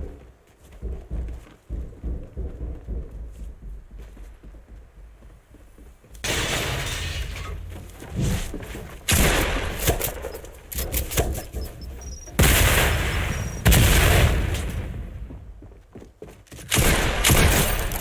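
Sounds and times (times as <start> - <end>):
shotgun blasts: 9.1 - 10.4, 12.4 - 14.9.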